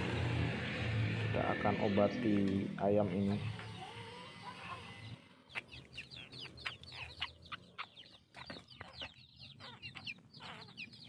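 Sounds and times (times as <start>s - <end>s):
chick peeping: 3.2s - 11.0s.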